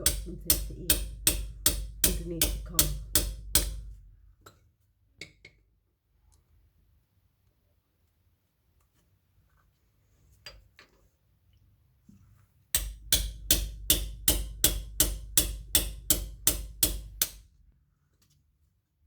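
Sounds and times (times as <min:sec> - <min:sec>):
hammer striking metal bar: 0:00.0 - 0:04.0, 0:12.8 - 0:17.4.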